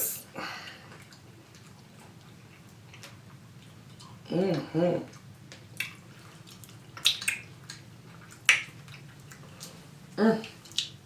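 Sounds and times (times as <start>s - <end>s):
wet mouth smacks: 5.5s - 9.8s, 10.6s - 11.0s.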